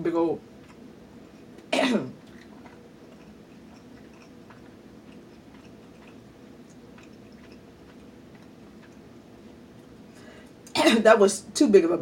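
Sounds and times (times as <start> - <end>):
person chewing food: 0.5 - 10.6.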